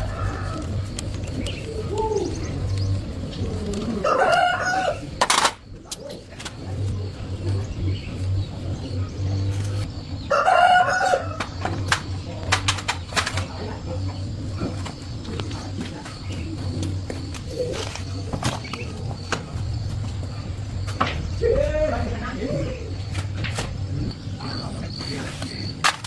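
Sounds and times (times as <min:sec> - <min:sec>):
rooster crowing: 0:00.0 - 0:00.9, 0:03.7 - 0:05.2, 0:10.2 - 0:11.6.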